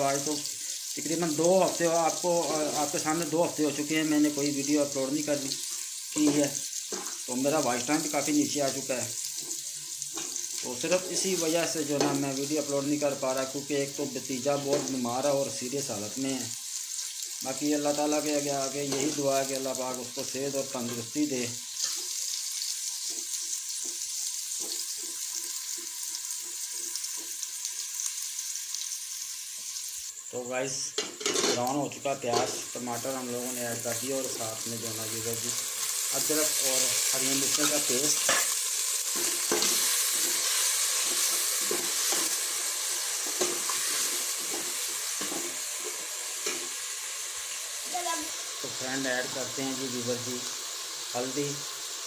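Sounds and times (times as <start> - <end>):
onions sizzling in a pot: 0.0 - 52.0
spoon stirring and scraping: 43.2 - 46.7.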